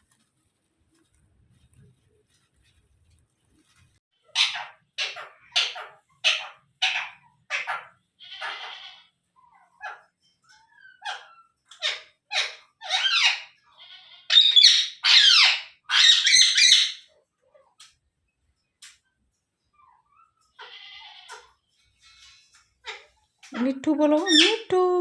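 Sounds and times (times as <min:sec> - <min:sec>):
parrot calling and screeching: 0:04.2 - 0:17.1.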